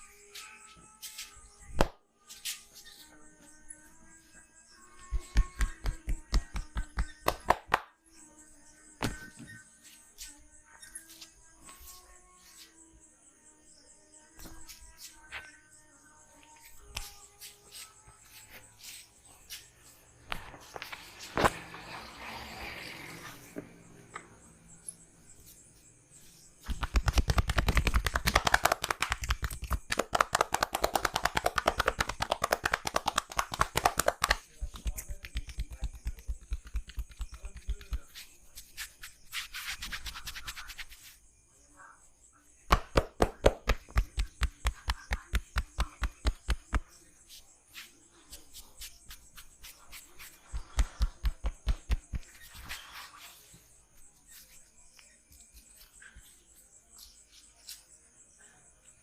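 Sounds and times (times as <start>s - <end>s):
hands slapping on skin: 1.8s - 2.6s, 5.1s - 8.0s, 16.8s - 17.8s, 26.6s - 41.1s, 42.7s - 46.9s, 47.8s - 52.8s.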